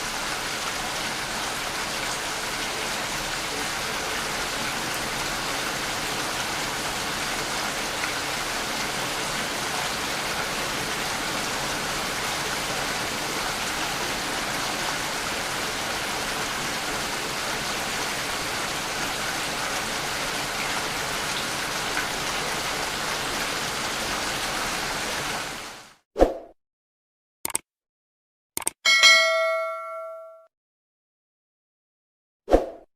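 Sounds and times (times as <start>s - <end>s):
steady rain falling: 0.0s - 26.0s.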